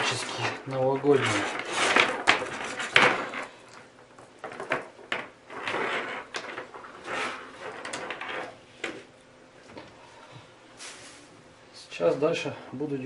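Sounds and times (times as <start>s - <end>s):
rustling: 0.0s - 9.1s.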